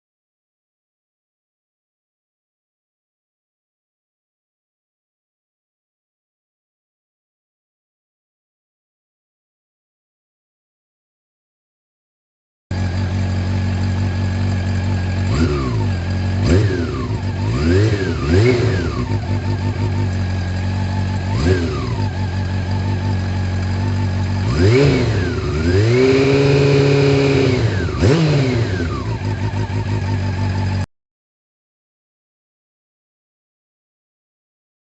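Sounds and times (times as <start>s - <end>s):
motorcycle engine revving: 12.7s - 30.9s.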